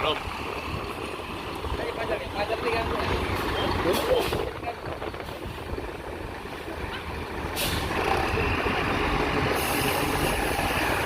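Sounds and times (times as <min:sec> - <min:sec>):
bus diesel engine running: 0:00.0 - 0:11.0
air-brake hiss: 0:07.6 - 0:07.9, 0:09.5 - 0:10.5.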